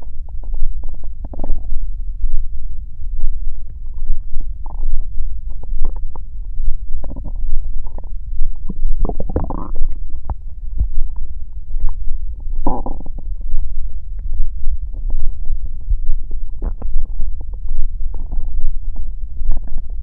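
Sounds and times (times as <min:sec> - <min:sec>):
stomach growling: 0:00.0 - 0:02.4, 0:03.5 - 0:20.0
liquid gurgles: 0:07.0 - 0:10.3.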